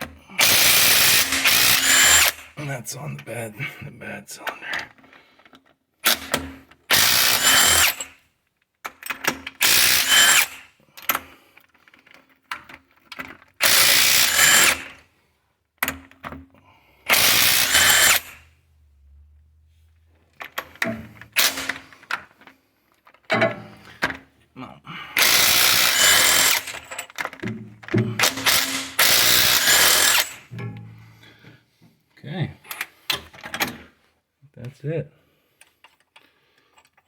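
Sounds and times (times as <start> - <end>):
power tool whining: 0.4 - 2.6, 6.9 - 8.2, 9.6 - 10.6, 13.6 - 15.0, 17.1 - 18.4, 25.2 - 27.1, 28.0 - 31.2.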